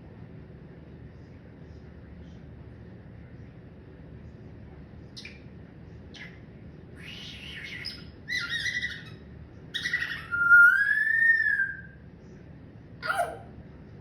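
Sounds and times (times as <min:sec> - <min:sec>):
parrot harsh calls: 0:07.0 - 0:12.0, 0:13.0 - 0:13.5
parrot whistle: 0:07.0 - 0:12.0.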